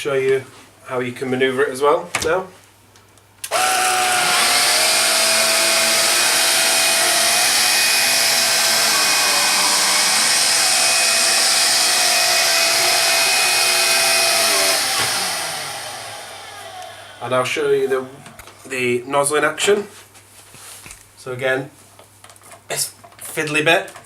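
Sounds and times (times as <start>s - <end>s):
upright vacuum cleaner running: 3.5s - 18.7s.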